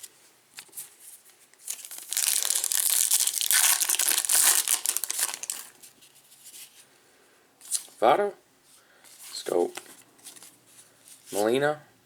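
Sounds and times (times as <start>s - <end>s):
wrapper crinkling and tearing: 1.6s - 5.8s.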